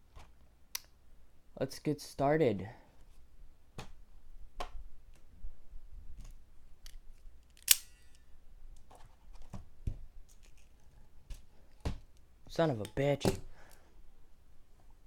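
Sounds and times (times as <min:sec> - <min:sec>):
objects being handled: 0:06.1 - 0:13.8.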